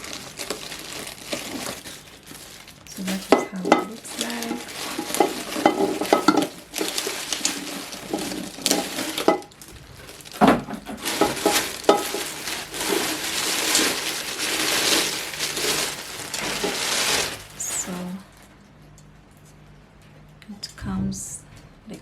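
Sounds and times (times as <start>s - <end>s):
rustling: 0.0s - 18.6s
cooker lid and pot clinking: 3.3s - 9.5s.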